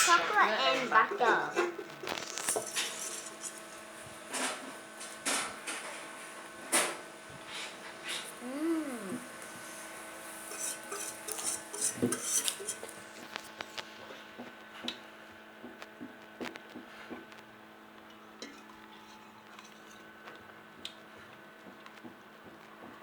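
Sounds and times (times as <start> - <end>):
utensil clinking against bowl: 10.5 - 13.0.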